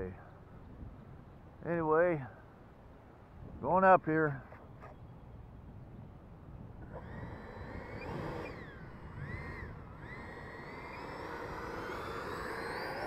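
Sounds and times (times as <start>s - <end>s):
wind noise: 0.1s - 1.6s, 3.2s - 3.8s, 4.5s - 13.0s
electric ducted fan whining: 6.3s - 13.0s.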